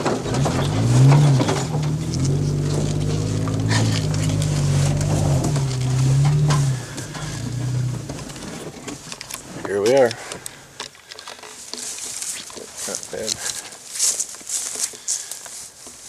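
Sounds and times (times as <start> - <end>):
car engine running: 0.0 - 8.9.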